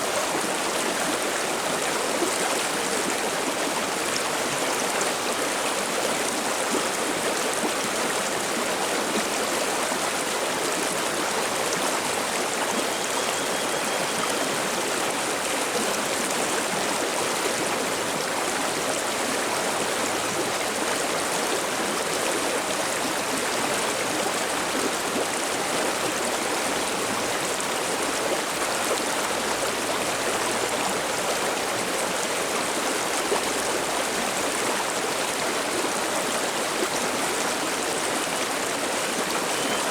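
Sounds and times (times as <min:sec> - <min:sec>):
stream babbling over rocks: 0:00.0 - 0:39.9.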